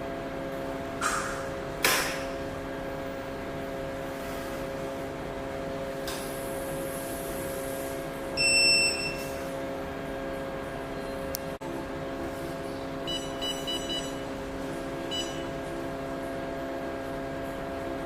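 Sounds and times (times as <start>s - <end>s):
machine humming: 0.0s - 18.0s
electronic beep: 13.1s - 14.2s, 15.1s - 15.5s.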